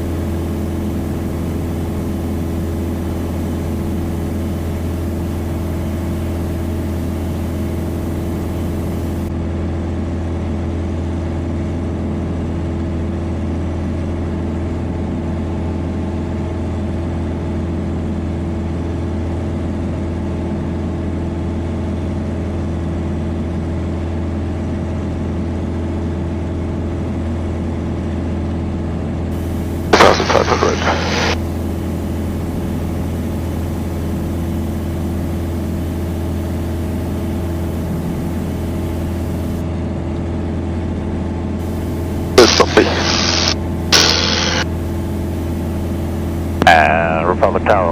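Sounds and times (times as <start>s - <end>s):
piston engine droning in flight: 0.0s - 18.4s, 29.3s - 47.9s
loud crackling burst: 29.4s - 39.6s, 41.6s - 47.0s.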